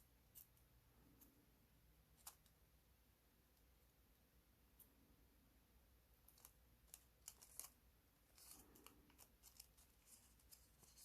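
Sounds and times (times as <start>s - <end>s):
paper being folded: 6.3s - 11.0s.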